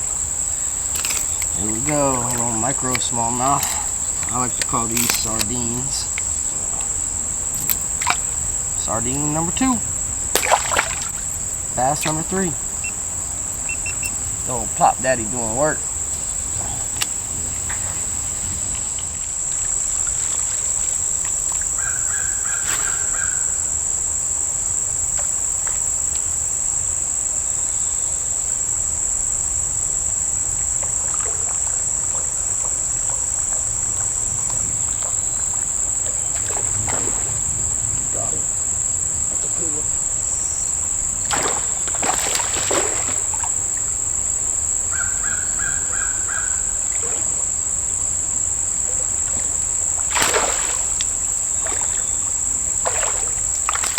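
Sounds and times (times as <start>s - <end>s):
high-pitched insect drone: 0.0s - 53.9s
crow cawing: 21.8s - 23.6s, 44.8s - 47.2s.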